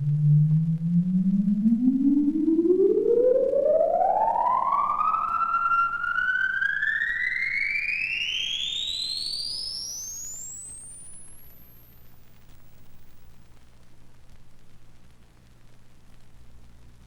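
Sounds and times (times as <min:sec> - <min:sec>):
rising siren-like tone: 0:00.0 - 0:13.2.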